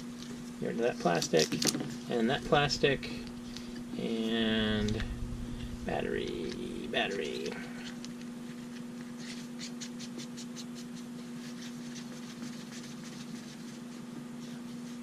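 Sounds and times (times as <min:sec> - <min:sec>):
steady low hum: 0:00.0 - 0:11.4.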